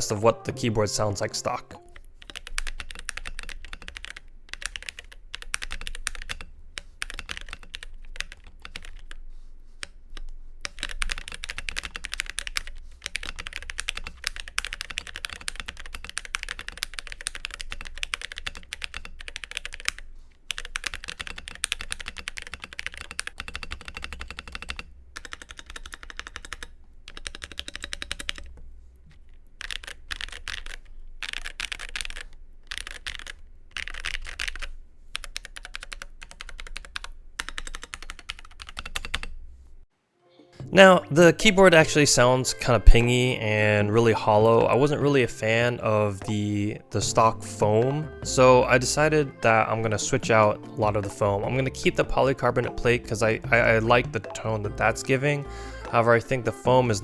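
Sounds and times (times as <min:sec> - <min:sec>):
keyboard keystroke clacks: 0:09.8 - 0:28.6.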